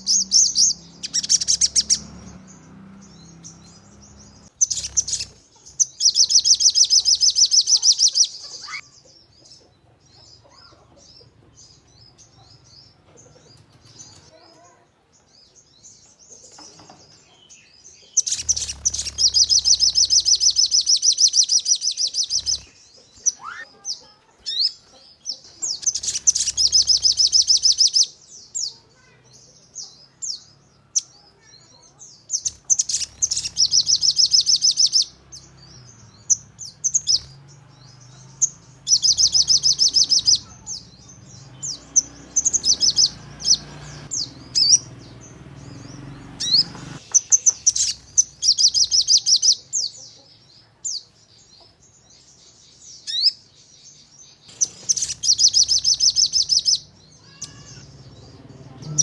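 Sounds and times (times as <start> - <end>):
short sharp bird chirps: 0.0 - 2.1, 3.1 - 8.9, 18.1 - 23.8, 25.6 - 29.2, 31.0 - 37.4, 46.4 - 49.6, 54.5 - 57.9
songbird trilling: 0.0 - 8.9, 18.2 - 29.2, 32.3 - 50.0, 54.5 - 59.0.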